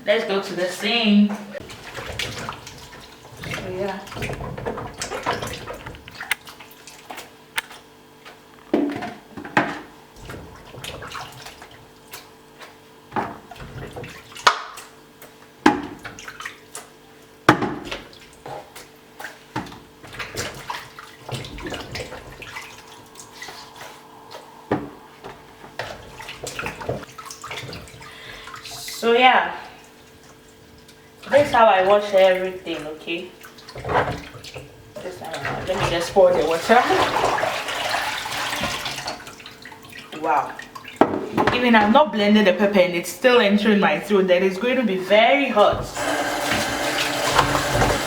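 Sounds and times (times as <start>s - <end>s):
water running and splashing: 1.6s - 8.5s, 18.0s - 41.5s, 45.2s - 48.0s.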